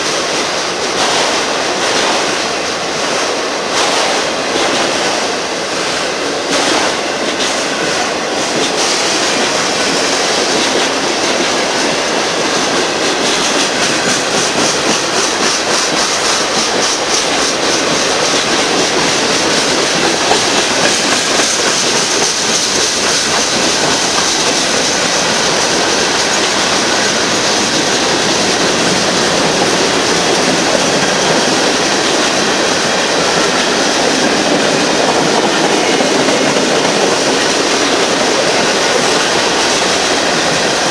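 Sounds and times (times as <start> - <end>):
freight train wheels rumbling: 0.0 - 40.9
wheels clicking over track: 6.5 - 40.9.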